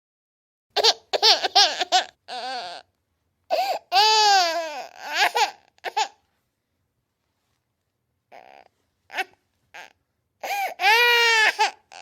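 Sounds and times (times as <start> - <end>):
baby crying: 0.8 - 2.9, 3.5 - 6.2, 8.3 - 12.0
baby gasping: 3.5 - 4.0, 8.4 - 10.9.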